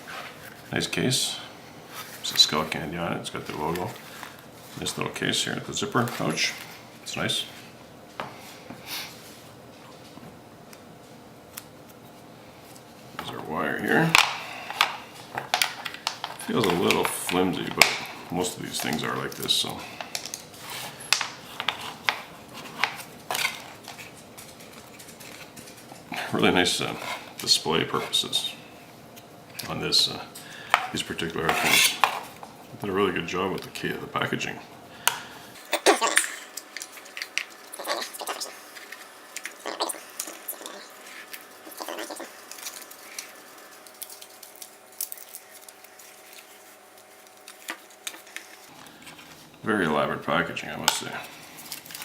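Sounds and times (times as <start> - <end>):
faint steady hum: 0.0 - 52.0
packaging and cable handling: 35.8 - 49.6, 51.0 - 52.0.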